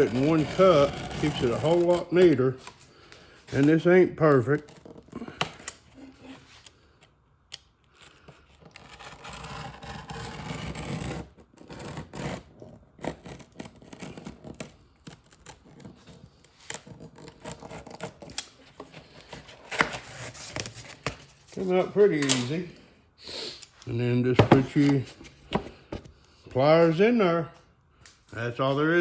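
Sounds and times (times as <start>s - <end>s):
utility knife scraping through foam: 0.0s - 2.7s, 8.4s - 18.2s.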